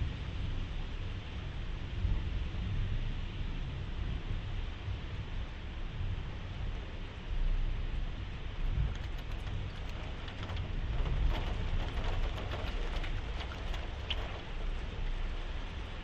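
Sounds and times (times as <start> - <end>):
raindrops tapping on glass: 8.6 - 15.9
rain hissing: 8.6 - 16.0.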